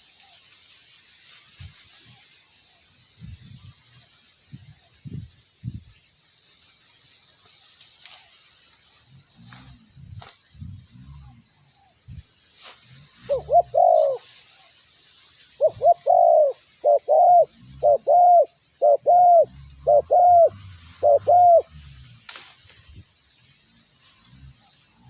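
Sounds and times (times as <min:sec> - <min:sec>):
steady high hiss: 0:00.0 - 0:25.0
dove cooing: 0:13.2 - 0:14.3, 0:15.6 - 0:21.8.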